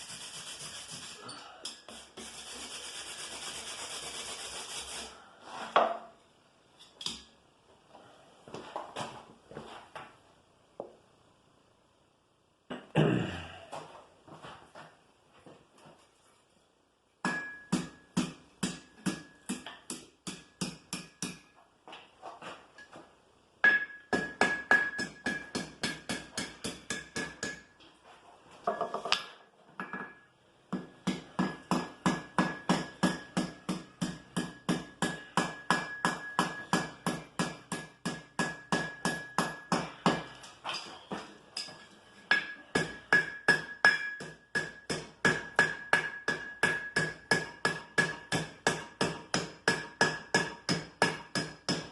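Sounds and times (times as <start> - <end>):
hammer striking iron on anvil: 17.2 - 21.5, 23.6 - 27.7, 29.8 - 40.3, 41.6 - 51.9.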